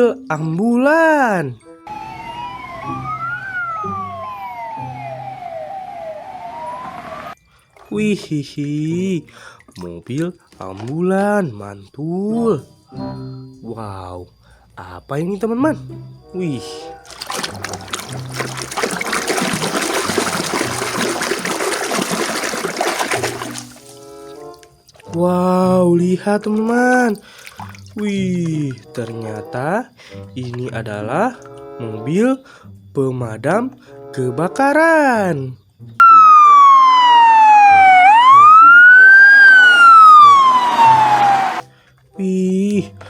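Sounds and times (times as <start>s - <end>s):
fire engine siren wailing: 1.8s - 7.4s, 36.0s - 41.7s
water pouring and splashing: 7.6s - 11.2s, 17.0s - 25.3s, 26.4s - 29.3s.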